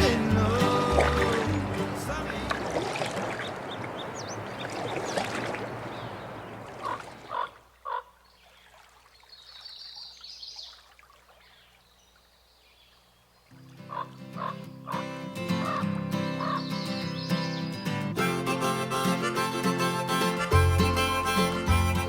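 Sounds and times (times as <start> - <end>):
running water rushing: 0.0 - 7.8, 8.4 - 11.7
short animal calls: 6.0 - 8.2, 13.9 - 16.8.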